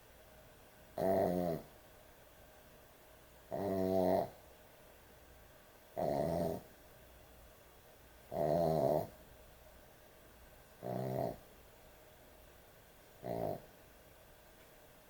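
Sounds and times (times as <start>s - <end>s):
dog snoring: 1.0s - 1.7s, 3.5s - 4.4s, 6.0s - 6.7s, 8.3s - 9.2s, 10.8s - 11.5s, 13.2s - 13.7s.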